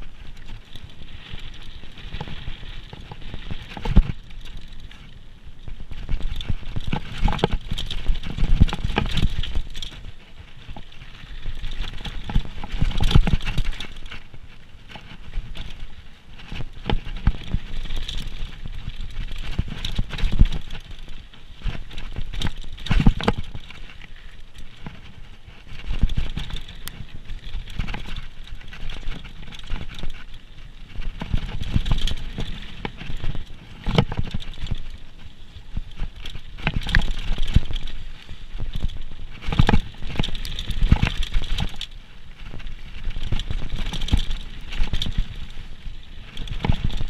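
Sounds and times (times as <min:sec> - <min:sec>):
bike clattering over rocks: 0:05.7 - 0:14.2, 0:16.5 - 0:23.9, 0:25.7 - 0:35.0, 0:35.8 - 0:47.0.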